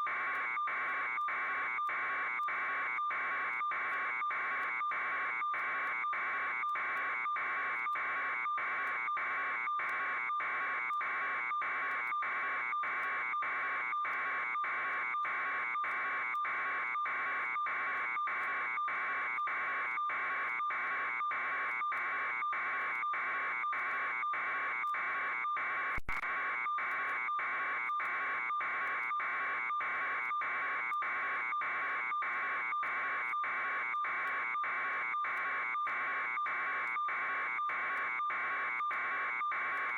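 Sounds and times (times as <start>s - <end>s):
sharp click: 26.0s - 26.2s.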